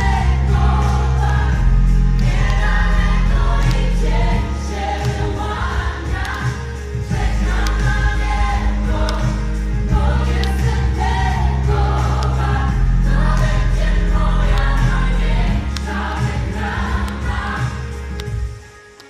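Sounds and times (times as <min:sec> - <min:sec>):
heavy bass notes: 0:00.0 - 0:18.4
choir singing gospel song: 0:00.0 - 0:18.6.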